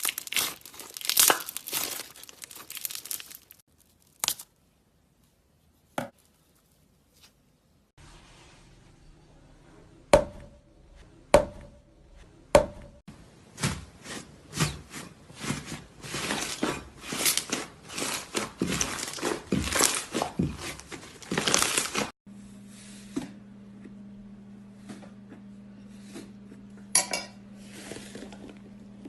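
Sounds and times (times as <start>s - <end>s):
slime crunchy crackling: 0.0s - 4.6s, 16.1s - 22.2s.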